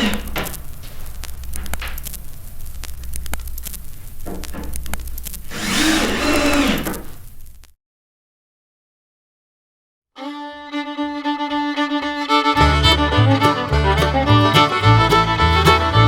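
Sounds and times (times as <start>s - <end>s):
held string notes: 10.2s - 16.0s
bass line: 11.8s - 16.0s
steady beat: 11.8s - 16.0s.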